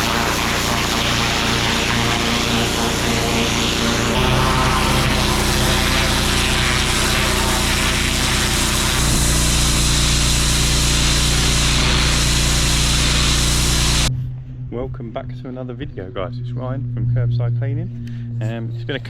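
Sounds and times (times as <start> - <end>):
pressure washer engine running: 0.0 - 14.1
water spray hissing: 0.0 - 14.1.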